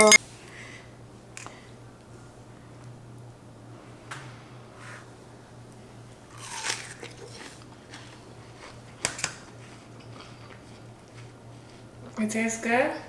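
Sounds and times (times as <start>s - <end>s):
biting into watermelon: 6.3s - 12.2s
chewing: 6.3s - 12.2s.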